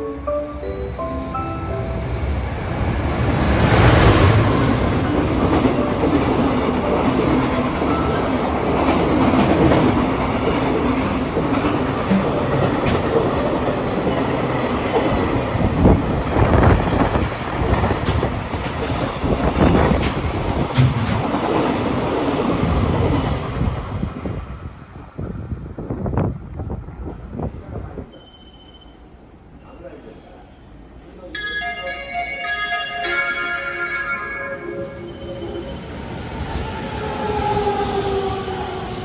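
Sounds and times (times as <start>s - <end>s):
train wheels clattering over rails: 3.1s - 23.9s.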